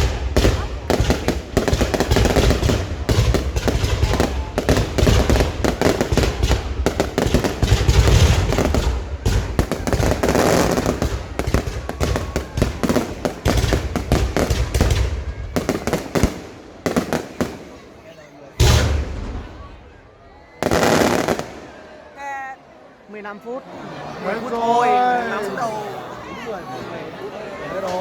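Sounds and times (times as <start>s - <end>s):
fireworks bangs and crackles: 0.0s - 21.9s.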